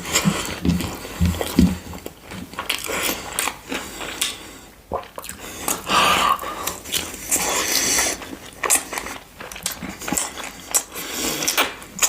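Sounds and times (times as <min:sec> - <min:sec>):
crunchy chewing: 0:05.0 - 0:12.0.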